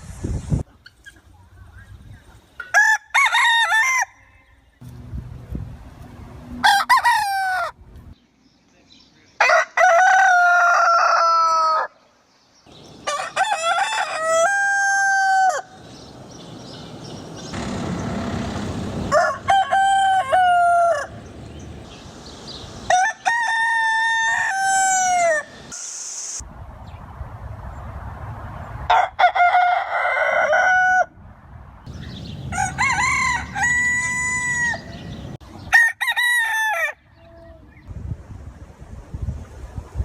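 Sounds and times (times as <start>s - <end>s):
roosters crowing: 2.6s - 4.6s, 6.6s - 7.8s, 9.4s - 12.0s, 12.8s - 25.8s, 28.9s - 31.1s, 31.9s - 37.1s.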